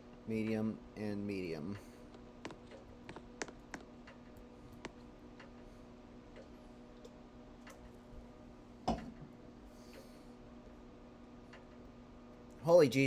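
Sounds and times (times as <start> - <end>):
ceiling fan humming with ticks: 0.0 - 13.0.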